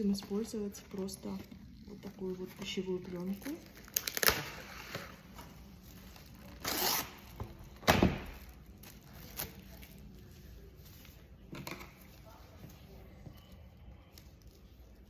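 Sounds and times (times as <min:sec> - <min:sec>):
cling film pulled and torn: 0:03.4 - 0:10.1.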